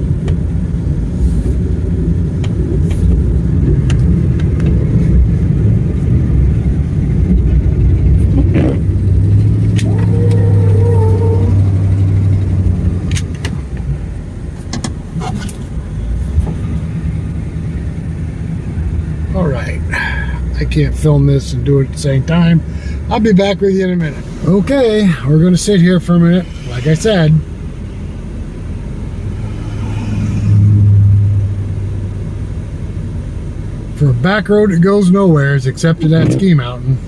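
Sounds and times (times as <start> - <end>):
truck engine plowing snow: 0.0 - 37.0
clicks: 12.6 - 13.9.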